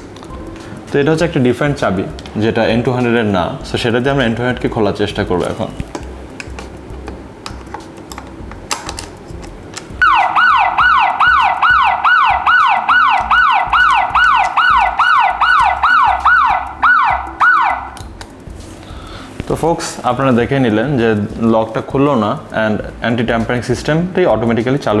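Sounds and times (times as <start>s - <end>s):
door lock alarm siren: 10.0s - 18.0s.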